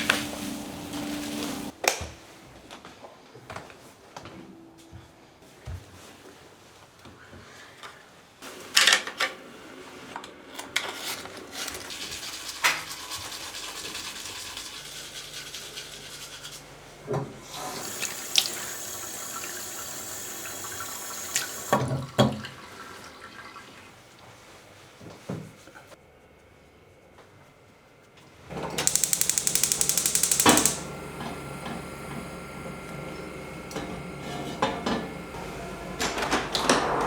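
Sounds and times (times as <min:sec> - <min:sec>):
tap water running into sink: 0:17.5 - 0:23.8.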